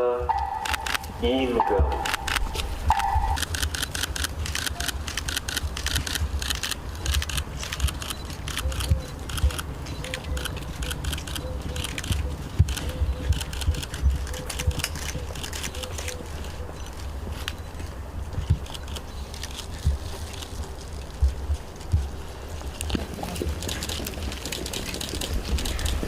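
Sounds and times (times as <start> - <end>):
sharp clicks: 0.3 - 1.2, 1.9 - 16.2.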